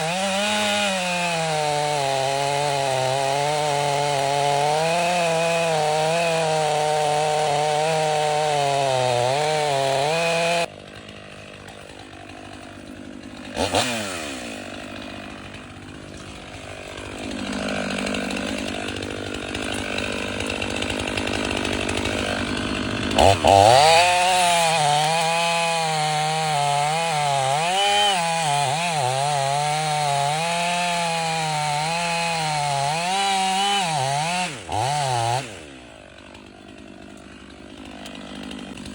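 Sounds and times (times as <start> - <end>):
chainsaw cutting: 0.0 - 38.9.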